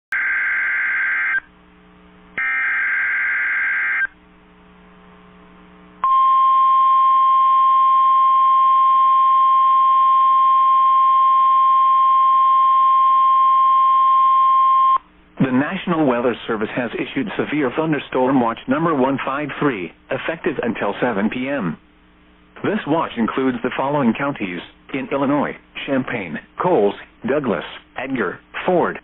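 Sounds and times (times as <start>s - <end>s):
steady warning alarm tone: 0.1s - 1.5s, 2.4s - 4.2s.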